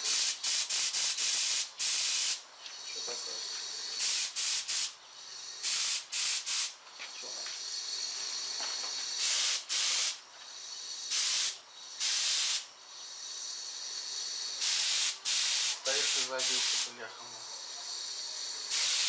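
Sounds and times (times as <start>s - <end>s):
spray paint can hissing: 0.0s - 2.4s, 3.3s - 5.0s, 5.6s - 6.8s, 7.5s - 10.2s, 10.8s - 12.7s, 14.0s - 17.0s, 18.1s - 19.0s.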